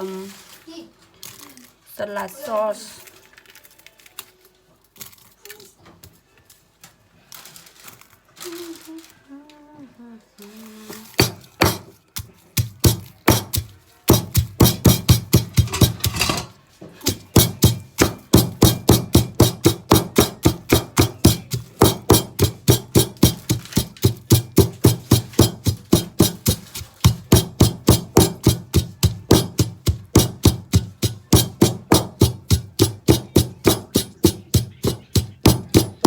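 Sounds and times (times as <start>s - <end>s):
pestle pounding in a mortar: 11.2s - 16.4s, 17.1s - 36.0s.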